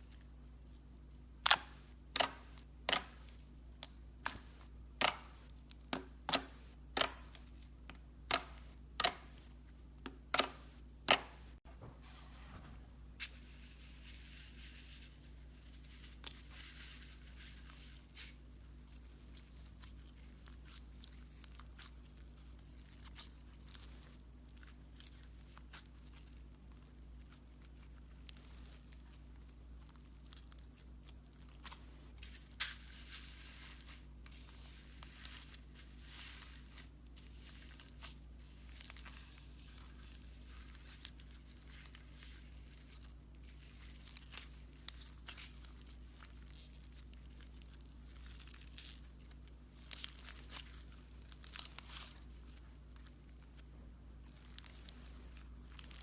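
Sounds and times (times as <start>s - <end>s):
slime crackling and popping: 18.8s - 56.0s.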